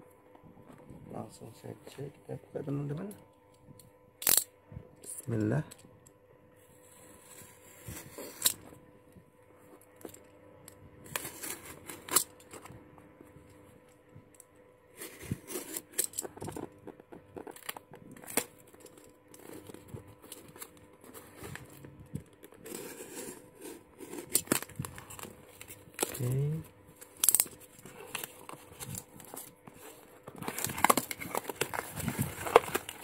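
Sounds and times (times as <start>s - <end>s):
packaging tearing and crinkling: 17.4s - 33.0s.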